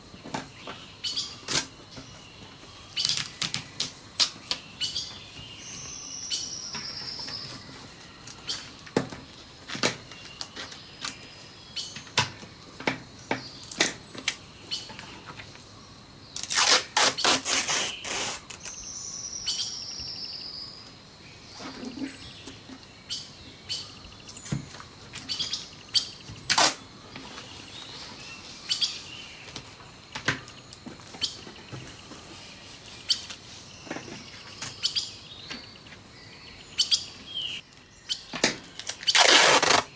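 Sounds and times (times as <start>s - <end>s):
birdsong: 0.0s - 39.9s
paper and tape crinkling: 16.4s - 18.7s, 38.7s - 39.9s
tape pulled off roll: 16.4s - 18.8s, 38.8s - 39.9s.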